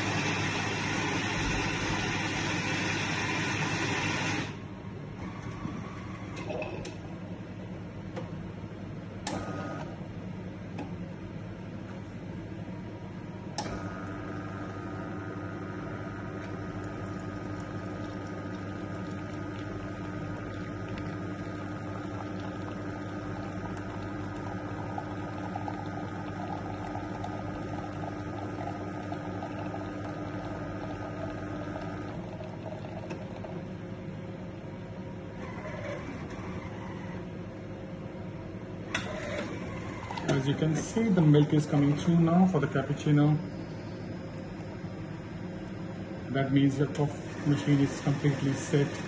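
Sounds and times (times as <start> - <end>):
coffee machine pump hum: 0.0 - 49.0
liquid running: 13.8 - 33.8.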